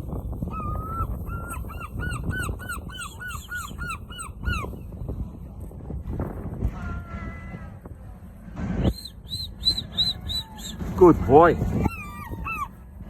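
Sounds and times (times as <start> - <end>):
seagull long call: 0.4 - 4.9, 9.0 - 12.8.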